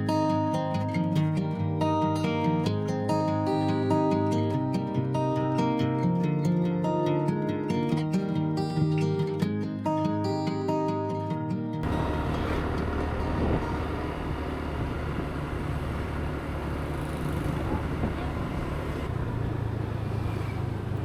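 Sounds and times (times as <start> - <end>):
guitar music: 0.0 - 16.4
traffic engine rumble: 11.8 - 21.0.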